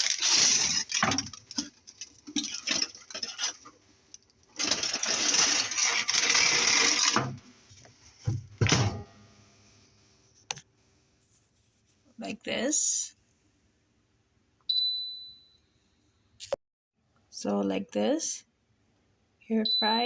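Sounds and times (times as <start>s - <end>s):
air fryer basket rattling: 0.0s - 3.7s, 4.6s - 7.4s, 8.6s - 9.1s
scraping: 0.0s - 3.8s, 4.6s - 7.4s.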